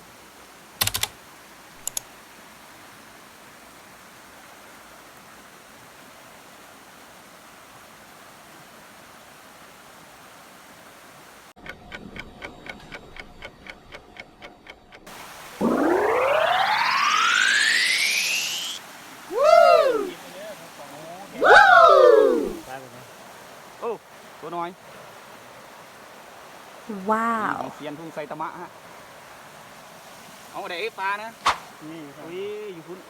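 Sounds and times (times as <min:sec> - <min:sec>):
short clicks: 0:00.8 - 0:01.1
steady hiss: 0:15.1 - 0:21.4, 0:22.0 - 0:26.9, 0:27.6 - 0:33.0
rising sweep: 0:15.6 - 0:20.1.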